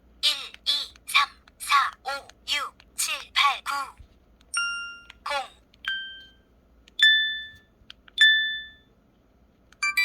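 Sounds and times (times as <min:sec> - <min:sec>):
synthetic voice syllable: 0:00.2 - 0:04.0, 0:05.2 - 0:05.6.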